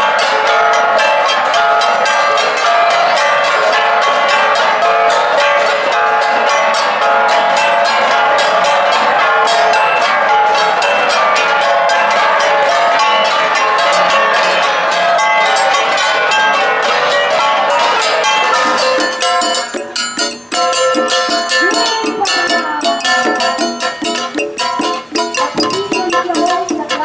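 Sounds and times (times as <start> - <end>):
flat gongs struck in fast rhythm: 18.2 - 27.0.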